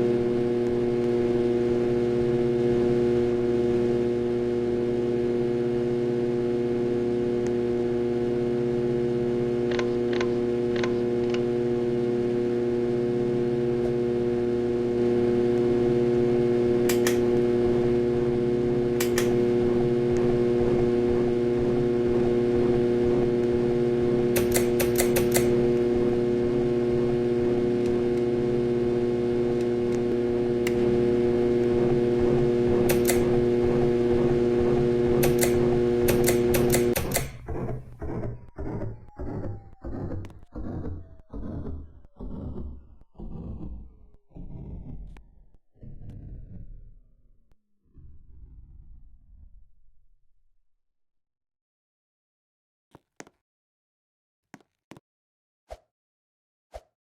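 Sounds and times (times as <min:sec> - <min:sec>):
ceiling fan motor humming: 0:00.0 - 0:45.2
sharp clicks: 0:09.7 - 0:11.5, 0:16.8 - 0:17.4, 0:18.9 - 0:19.4, 0:24.3 - 0:25.8, 0:32.8 - 0:33.4, 0:35.1 - 0:45.2.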